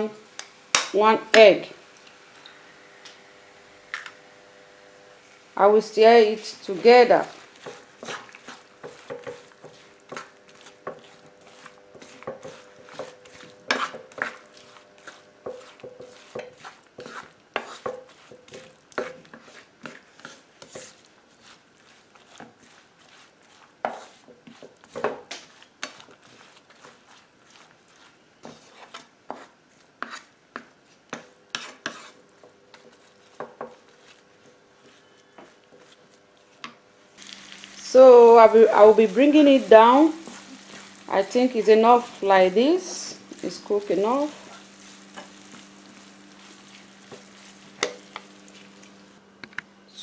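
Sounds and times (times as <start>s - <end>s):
egg frying: 6.6s - 49.2s
spoon scraping a pot: 7.1s - 36.8s, 38.8s - 49.0s.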